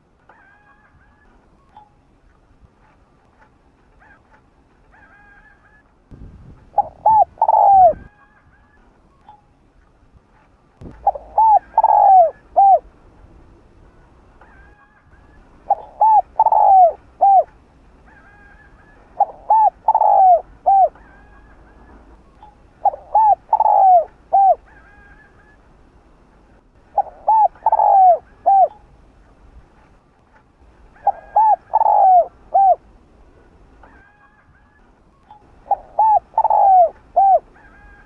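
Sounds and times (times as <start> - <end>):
dove cooing: 6.6 - 8.8, 10.8 - 12.9, 14.0 - 25.6, 26.9 - 28.9, 30.8 - 32.9, 35.5 - 38.0.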